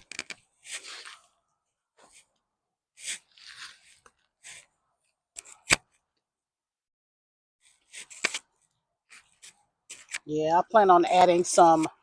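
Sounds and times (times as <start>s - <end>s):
hands digging in dry soil: 0.6s - 1.4s, 3.0s - 4.6s.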